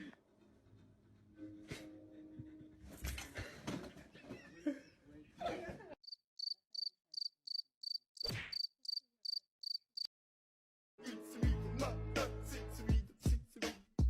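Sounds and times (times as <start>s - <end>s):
cricket chirping: 6.0s - 10.1s
music with a beat: 11.4s - 14.0s.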